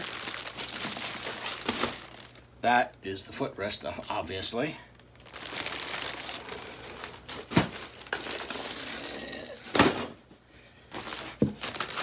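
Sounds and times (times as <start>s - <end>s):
plastic packaging crinkling: 0.0s - 2.6s, 4.9s - 9.5s, 10.9s - 12.0s.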